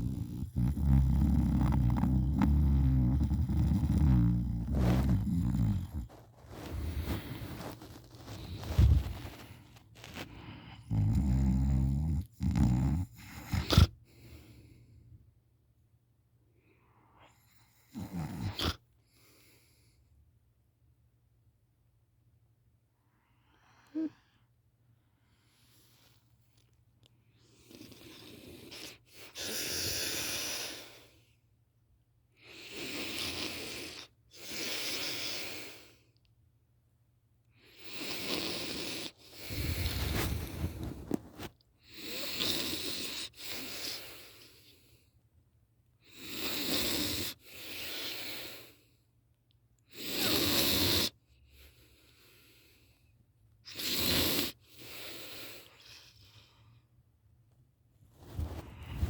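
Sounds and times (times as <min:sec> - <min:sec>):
woman snoring loudly: 0:00.0 - 0:06.1, 0:10.9 - 0:13.9.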